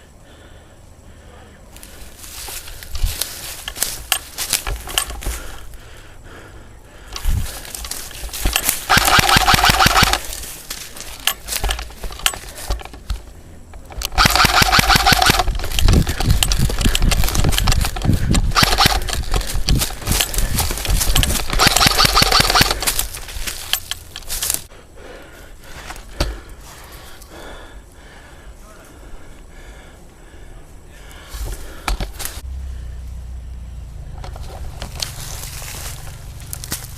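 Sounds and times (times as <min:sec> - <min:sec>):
airsoft rifle firing full-auto: 0:08.4 - 0:10.3, 0:14.0 - 0:15.7, 0:18.5 - 0:19.2, 0:21.4 - 0:23.0.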